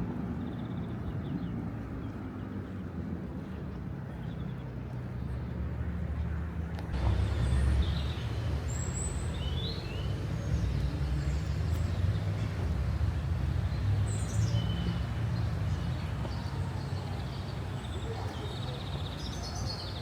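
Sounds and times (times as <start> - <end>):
distant traffic rumble: 5.2 - 20.0
small birds chirping: 7.0 - 20.0.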